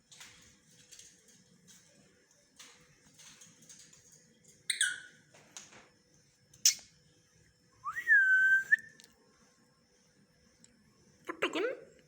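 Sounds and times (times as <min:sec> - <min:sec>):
parrot whistle: 0:07.8 - 0:08.9.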